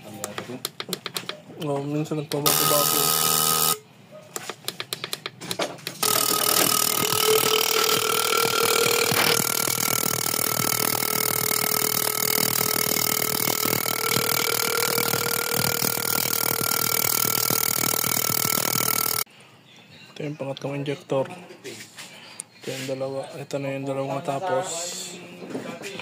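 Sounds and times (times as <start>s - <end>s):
motor hum: 2.5s - 3.8s, 6.0s - 19.3s
fuel injectors clicking: 4.4s - 19.3s.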